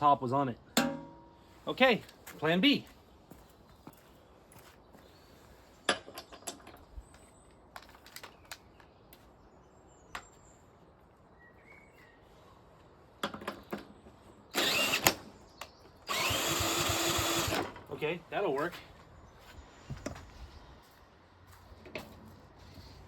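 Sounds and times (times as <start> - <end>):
power drill spinning up: 14.6 - 15.3, 16.1 - 17.8.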